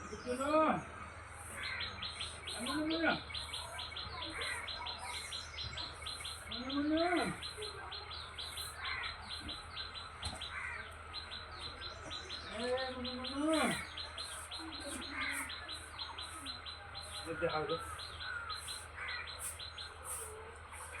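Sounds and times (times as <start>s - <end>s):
birds chirping rapidly: 0.0s - 21.0s.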